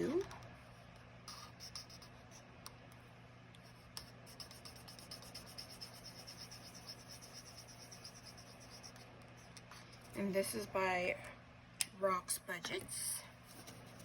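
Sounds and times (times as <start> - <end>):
pen scribbling on paper: 1.3 - 2.1, 4.0 - 9.0.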